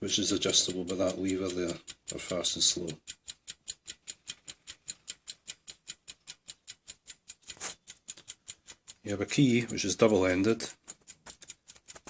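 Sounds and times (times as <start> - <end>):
clock ticking: 0.0 - 12.0
soft rustle: 7.4 - 8.4.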